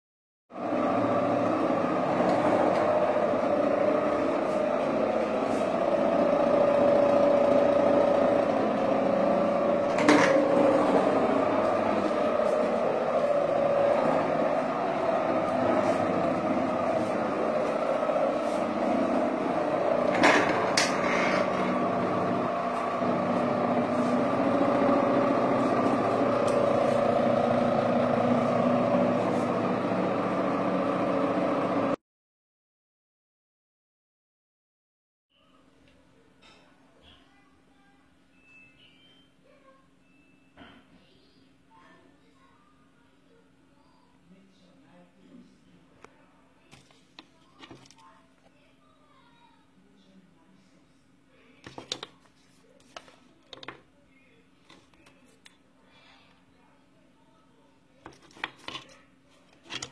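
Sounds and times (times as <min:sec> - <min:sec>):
machine droning hum: 0:00.7 - 0:32.0.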